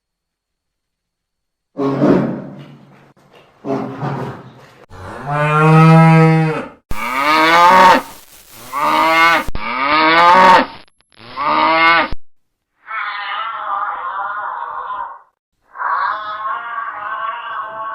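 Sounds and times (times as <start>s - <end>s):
cows mooing: 4.9s - 8.1s, 15.8s - 17.9s.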